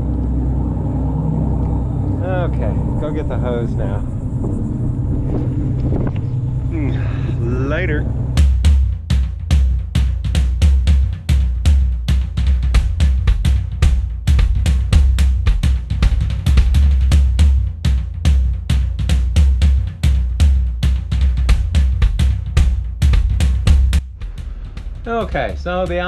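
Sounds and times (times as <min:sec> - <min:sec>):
drum beat with heavy bass: 0:05.2 - 0:26.0.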